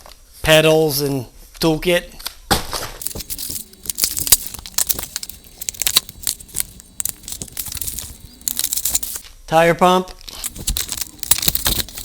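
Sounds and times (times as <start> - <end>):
packaging crinkling and rustling: 3.0 - 9.2, 10.4 - 12.0.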